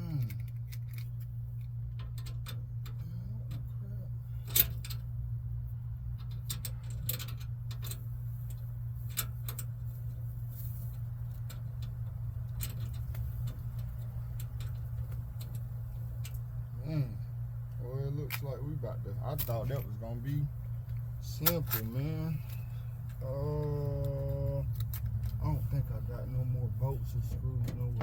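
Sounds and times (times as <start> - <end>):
steady low hum: 0.0 - 28.0
metal bolts clinking: 1.9 - 3.7, 4.3 - 5.0, 6.2 - 9.8, 11.3 - 16.6, 19.3 - 25.8, 26.9 - 28.0.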